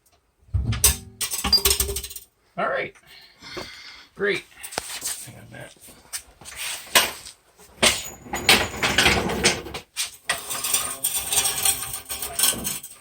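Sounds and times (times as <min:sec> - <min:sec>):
heavy metal parts clanking: 0:07.8 - 0:13.0.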